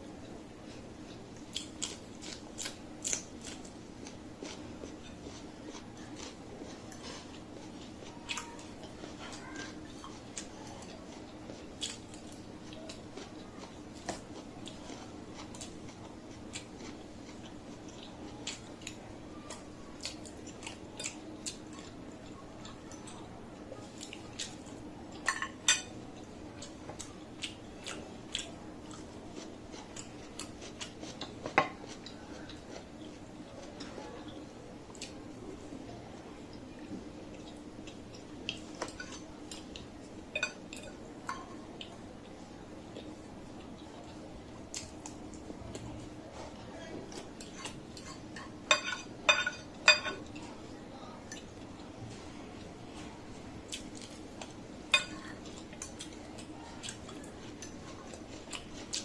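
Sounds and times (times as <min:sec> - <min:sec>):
soft eating clicks: 0:00.1 - 0:59.0
utensil clinking against dish: 0:48.0 - 0:50.4.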